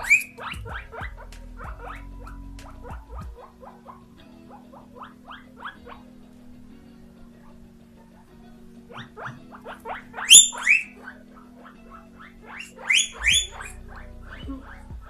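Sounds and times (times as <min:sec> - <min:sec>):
guinea pig squeaking and whistling: 0:00.0 - 0:06.1, 0:08.9 - 0:15.0.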